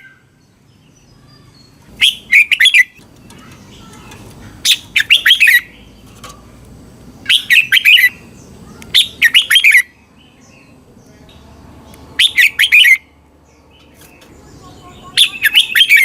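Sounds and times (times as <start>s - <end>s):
bird singing whistled phrases: 1.1s - 3.0s, 4.6s - 5.8s, 7.3s - 10.0s, 12.2s - 13.1s, 14.5s - 16.0s.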